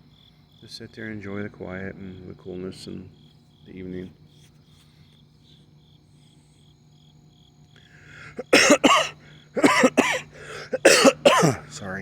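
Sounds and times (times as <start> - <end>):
crickets chirping: 0.0 - 12.0
man coughing: 8.4 - 11.7.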